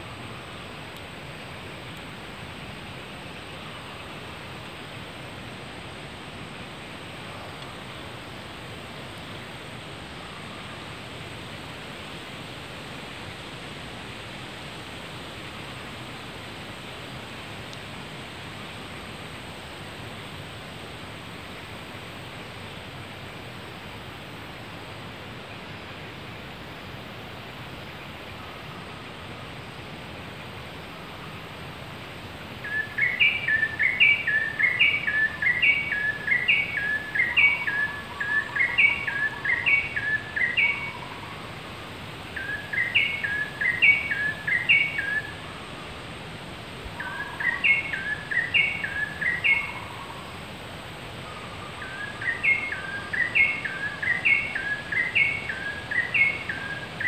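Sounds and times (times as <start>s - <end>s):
forest hiss: 0.0s - 57.0s
bird singing chirping notes: 32.6s - 41.2s, 42.4s - 45.3s, 47.0s - 50.2s, 51.4s - 57.0s.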